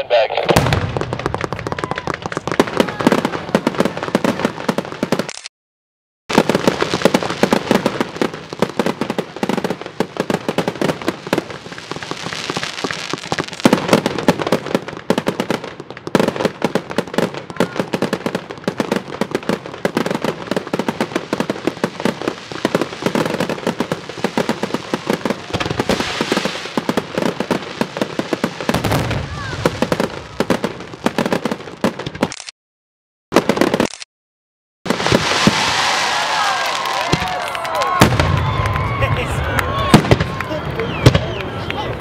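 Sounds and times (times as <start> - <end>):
fireworks bangs: 0.0 - 5.3, 6.3 - 32.4, 33.3 - 33.9, 34.9 - 42.0
fireworks crackling: 0.0 - 5.5, 6.3 - 32.5, 33.3 - 34.1, 34.9 - 42.0.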